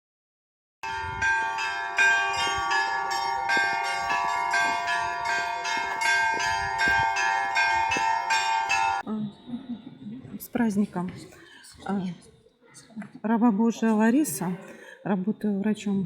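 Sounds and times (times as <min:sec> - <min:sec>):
church bells ringing: 0:00.8 - 0:09.0.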